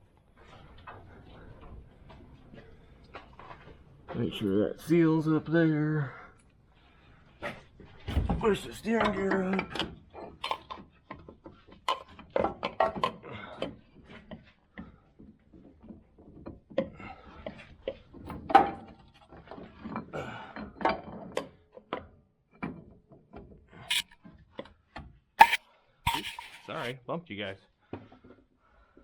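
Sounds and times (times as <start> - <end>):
metal parts knocking and scraping: 23.9 - 24.2, 25.4 - 26.9.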